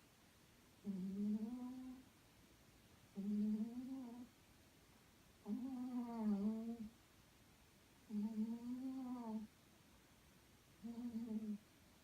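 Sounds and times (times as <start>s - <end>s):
cat snoring: 0.8s - 2.0s, 3.2s - 4.3s, 5.4s - 6.9s, 8.1s - 9.5s, 10.8s - 11.6s.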